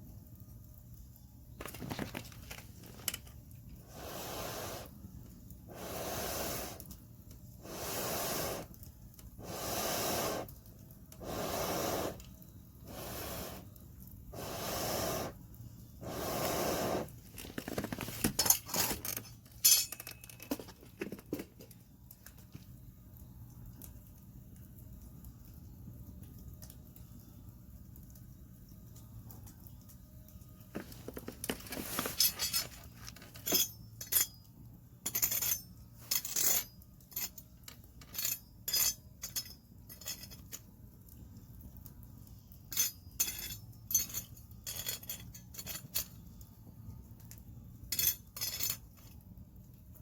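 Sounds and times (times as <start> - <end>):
campfire crackling: 0.0 - 19.6, 20.2 - 35.0, 36.7 - 44.6, 45.2 - 50.0
puffs of air blown on fire: 3.8 - 17.3.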